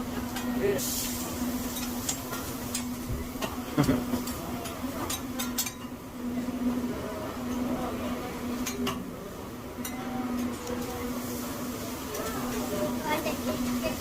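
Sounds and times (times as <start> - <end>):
faint background chatter: 0.0 - 14.0
cutlery clinking on plates: 1.7 - 6.0, 8.6 - 9.0.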